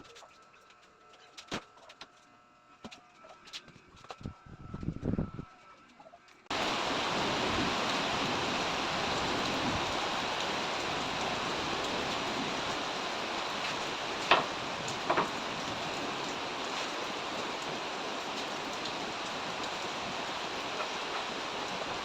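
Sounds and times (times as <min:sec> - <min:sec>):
steady hiss: 0:06.5 - 0:22.0.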